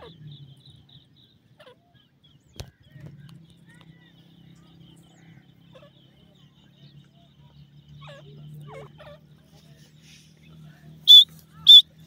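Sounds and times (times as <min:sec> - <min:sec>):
pheasants calling: 0:00.0 - 0:12.0.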